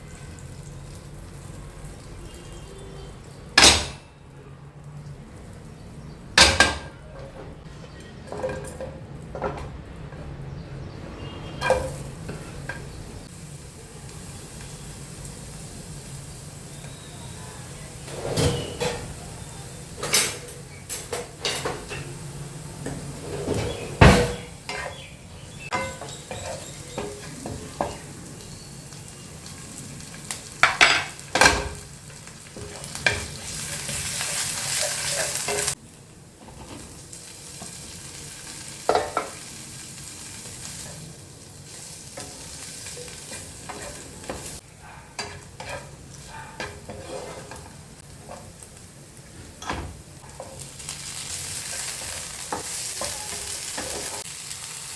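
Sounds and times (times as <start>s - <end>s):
food sizzling in a pan: 0.0s - 4.0s, 11.1s - 54.9s
spatula scraping a pan: 41.7s - 48.5s.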